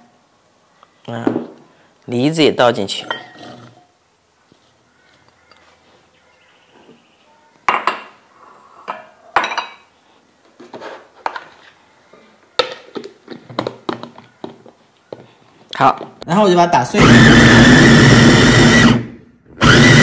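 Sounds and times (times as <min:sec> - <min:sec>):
kitchenware clinking against jar: 0:03.0 - 0:03.7, 0:08.9 - 0:09.9.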